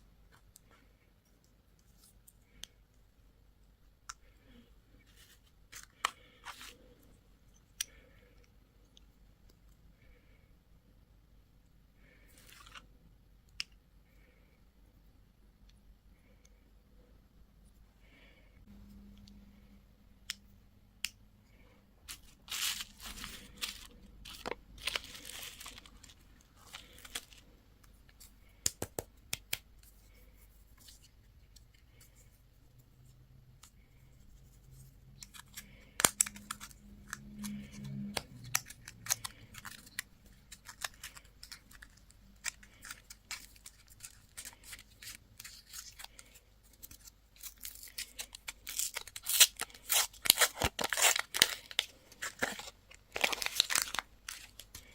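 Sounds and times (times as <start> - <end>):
packaging torn and crinkled: 22.1 - 27.4, 35.2 - 54.9.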